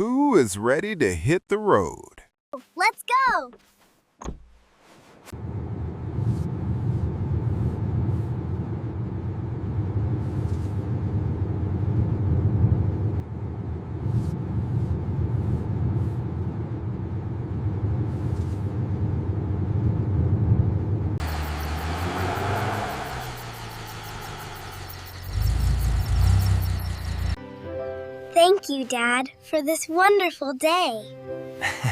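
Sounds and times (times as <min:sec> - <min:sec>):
car engine and road rumble: 0:04.2 - 0:27.4.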